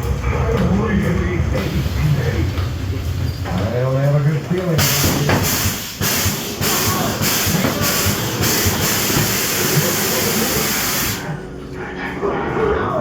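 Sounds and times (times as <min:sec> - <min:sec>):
loud hissing: 0:01.6 - 0:11.4.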